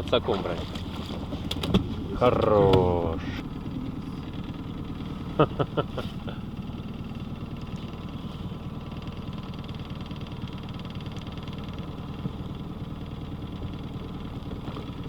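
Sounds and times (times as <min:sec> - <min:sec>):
boat motor running: 0:00.0 - 0:15.0.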